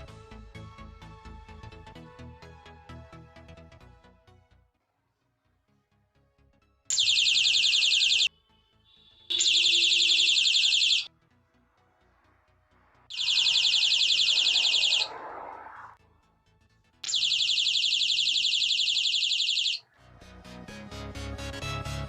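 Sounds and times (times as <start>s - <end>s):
electronic warbling bird chirp: 6.9s - 8.3s, 9.3s - 11.1s, 13.1s - 15.9s, 17.0s - 19.8s.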